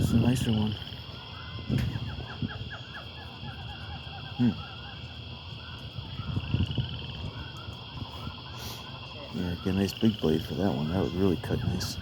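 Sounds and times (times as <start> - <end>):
birds chirping: 0.0 - 12.0
high insect-like drone: 0.0 - 12.0.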